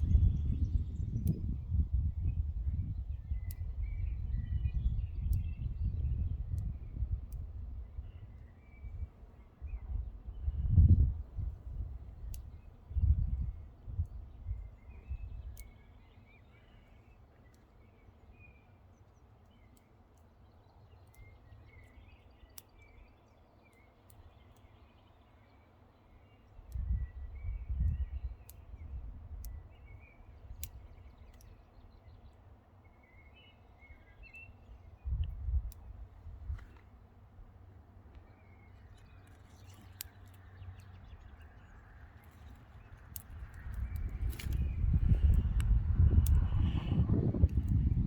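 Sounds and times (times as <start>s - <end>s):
seed pods bursting with clicks: 38.0s - 41.0s, 42.2s - 46.8s
low rumbles: 40.0s - 48.0s.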